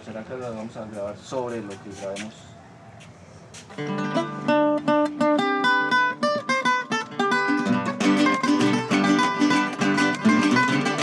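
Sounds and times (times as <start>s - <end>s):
picked string melody: 3.8s - 11.0s
strummed string chords: 4.0s - 11.0s.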